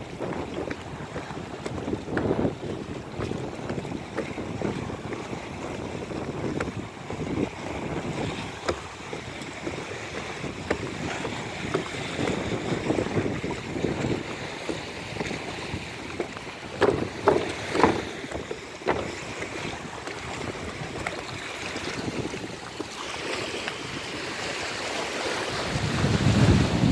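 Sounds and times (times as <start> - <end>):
sea waves lapping: 0.0 - 26.9
wind buffeting microphone: 0.0 - 26.9
short knocks: 16.2 - 19.5.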